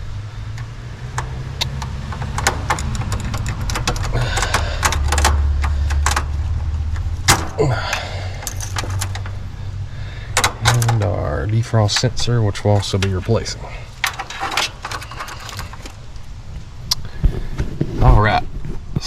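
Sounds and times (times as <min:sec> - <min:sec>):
steady low hum: 0:00.0 - 0:18.6
plastic connectors clicking: 0:00.5 - 0:09.5, 0:10.3 - 0:11.3.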